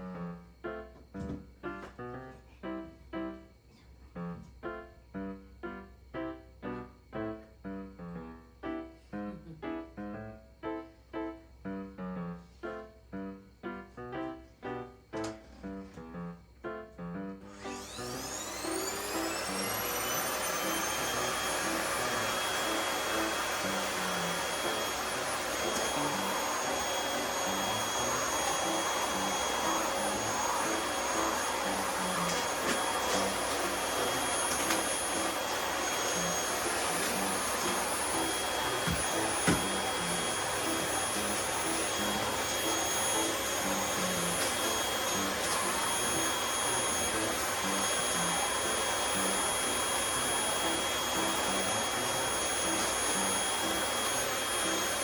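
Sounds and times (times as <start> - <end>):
vacuum cleaner running: 17.4 - 55.0.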